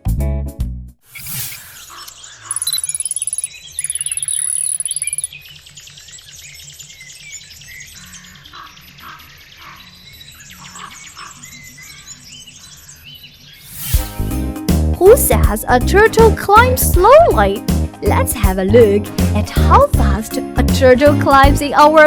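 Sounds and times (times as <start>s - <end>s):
high-pitched pulsing buzz: 1.2s - 6.4s
bird-like chirps: 1.2s - 14.0s
background music with steady beat: 13.9s - 21.8s.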